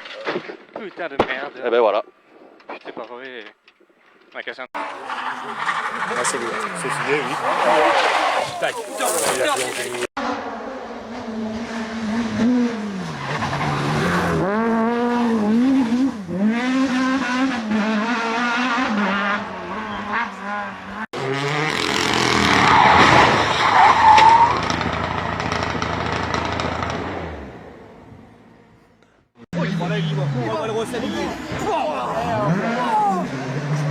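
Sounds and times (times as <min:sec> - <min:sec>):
gravel noise: 0:04.0 - 0:10.2
tyres skidding and squealing: 0:04.8 - 0:10.6, 0:12.3 - 0:33.9
rally car engine revving: 0:04.8 - 0:28.4, 0:29.5 - 0:33.9.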